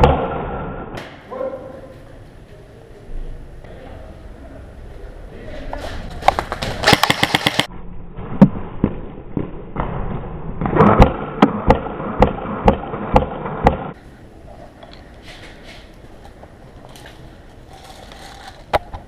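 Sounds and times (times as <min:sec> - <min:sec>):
airsoft rifle full-auto burst: 0:06.8 - 0:07.7.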